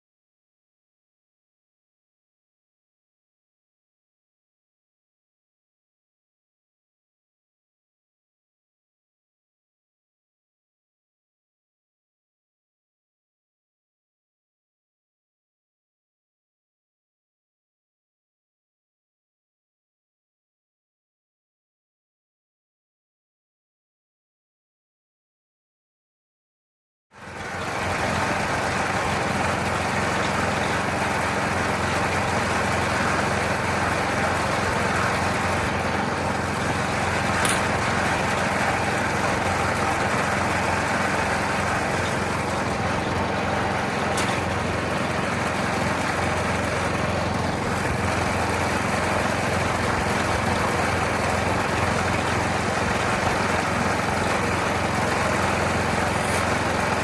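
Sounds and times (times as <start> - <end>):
gravel wash plant running: 27.2 - 57.0.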